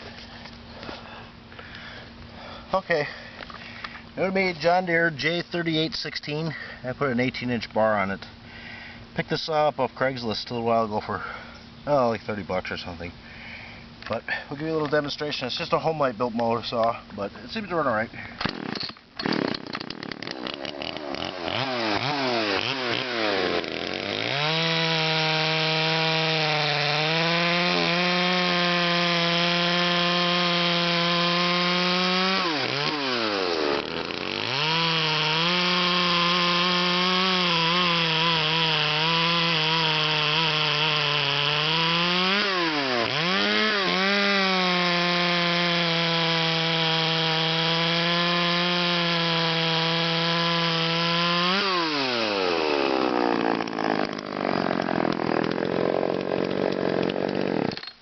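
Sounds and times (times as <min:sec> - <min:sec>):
chainsaw revving: 0:18.4 - 0:57.9.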